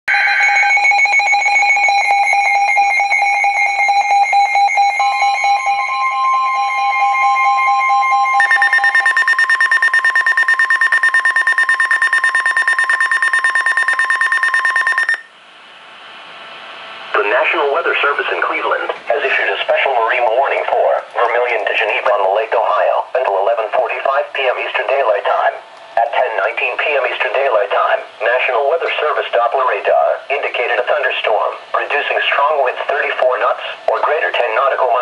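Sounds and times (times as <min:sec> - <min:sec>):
pulsing electronic alarm: 0:00.1 - 0:15.3
steady warning tone: 0:00.1 - 0:15.4.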